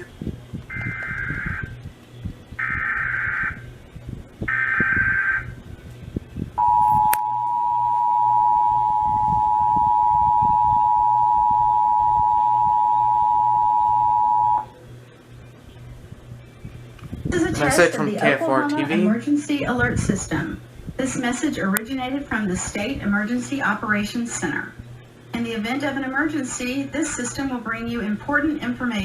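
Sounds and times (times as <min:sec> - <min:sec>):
data tone bursts: 0:06.6 - 0:14.7
two-tone attention signal: 0:06.6 - 0:14.7.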